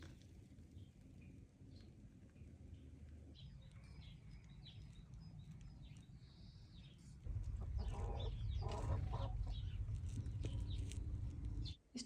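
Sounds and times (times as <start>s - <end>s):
low steady rumble: 0.0s - 11.9s
small birds chirping: 0.7s - 12.0s
hens clucking: 7.4s - 9.6s.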